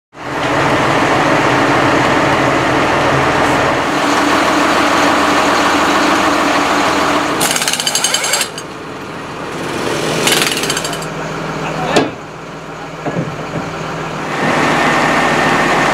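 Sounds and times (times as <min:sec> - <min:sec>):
heavy machinery engine running: 0:00.2 - 0:15.9
power tool rattling impacts: 0:07.4 - 0:08.7, 0:10.2 - 0:11.1.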